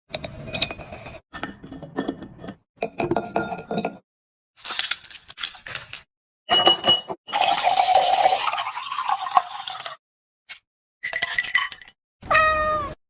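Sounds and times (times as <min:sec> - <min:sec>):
dishes clinking: 0:02.8 - 0:04.0, 0:06.5 - 0:07.2.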